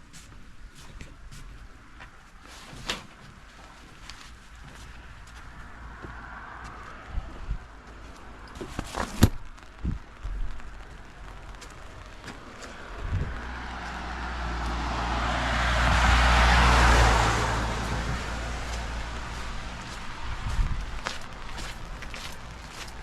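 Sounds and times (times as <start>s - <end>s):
vehicle passing by: 5.6s - 7.8s, 12.7s - 23.0s.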